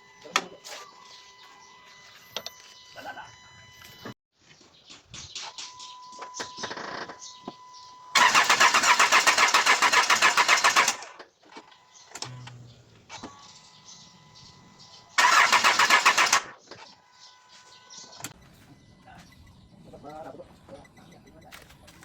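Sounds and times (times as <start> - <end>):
diesel engine cranking on starter: 8.2 - 11.2, 15.2 - 16.6.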